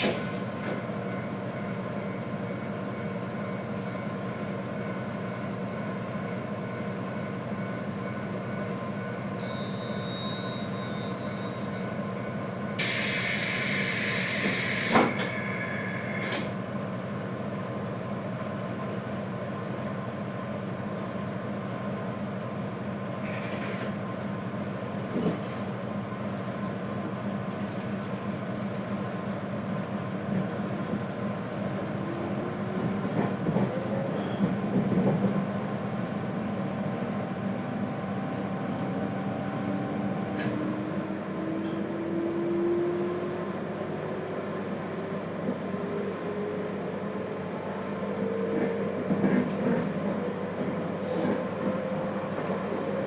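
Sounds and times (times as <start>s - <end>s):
train interior hum with whining tones: 0.0s - 53.0s.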